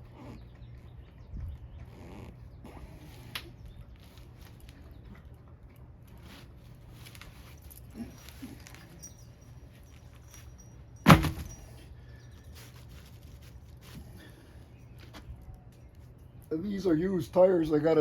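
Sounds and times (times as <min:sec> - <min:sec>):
handling noises with faint clicks: 0:03.3 - 0:10.7
loud thump: 0:11.1 - 0:11.5.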